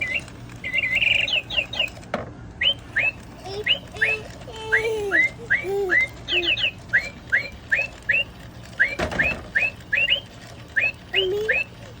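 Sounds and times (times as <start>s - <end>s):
bird chirping: 0.0s - 2.0s, 2.6s - 12.0s.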